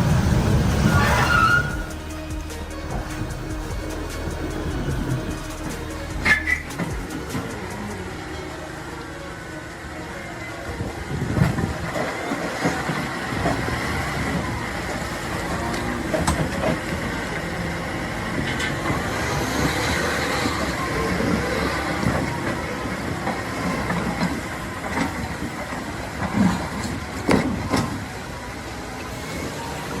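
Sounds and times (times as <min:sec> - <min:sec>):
heavy machine rumbling: 0:00.0 - 0:30.0
knocks and clanks: 0:18.3 - 0:28.1.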